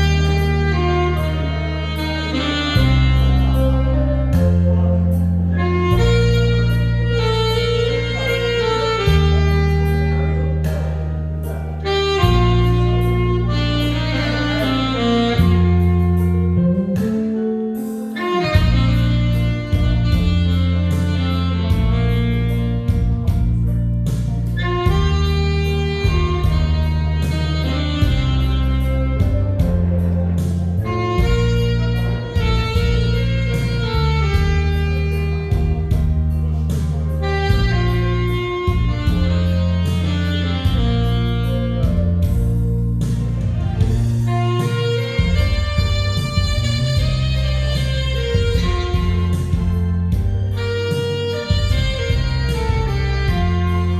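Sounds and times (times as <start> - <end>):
saxophone melody: 0.0 - 53.9
sustained bass: 0.0 - 53.9
steady drum beat: 18.4 - 53.9.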